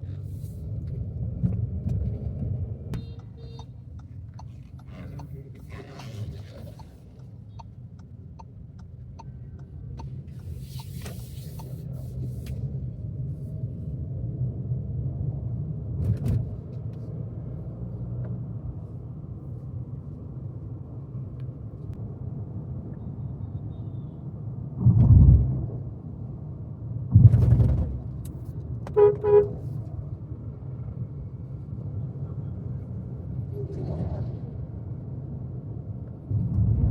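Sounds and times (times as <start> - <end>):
car horn toots: 3.0 - 3.8, 28.9 - 29.6.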